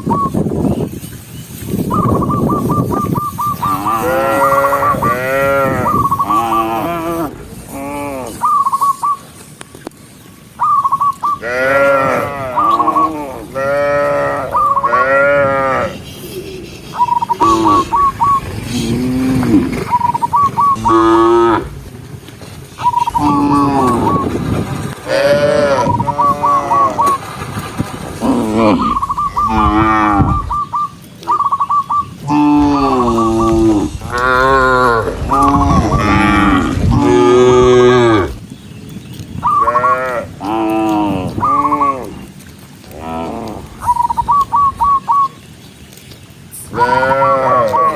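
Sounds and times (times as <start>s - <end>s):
high whistled chirps: 1.9s - 3.7s, 15.9s - 18.6s, 28.8s - 37.0s
cattle mooing: 3.6s - 8.5s, 11.4s - 16.0s, 17.2s - 21.9s, 23.0s - 24.3s, 25.0s - 27.2s, 28.2s - 30.7s, 32.2s - 38.4s, 39.6s - 42.2s, 46.7s - 47.9s.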